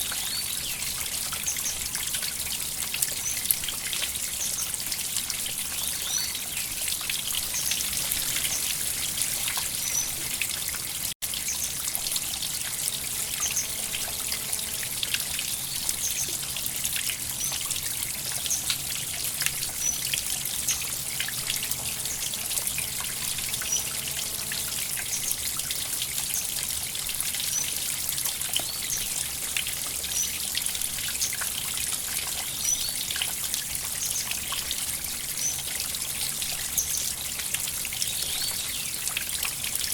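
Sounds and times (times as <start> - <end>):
river water babbling: 7.2 - 27.6.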